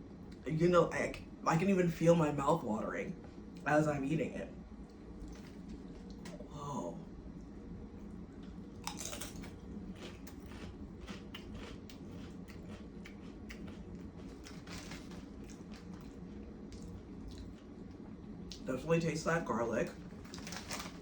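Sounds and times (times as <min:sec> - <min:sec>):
person chewing crunchy chips: 0:08.4 - 0:17.7, 0:20.1 - 0:21.0.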